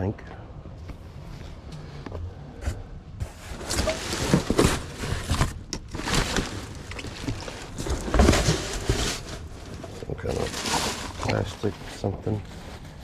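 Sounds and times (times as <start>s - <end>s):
rummaging through junk: 2.6s - 13.0s.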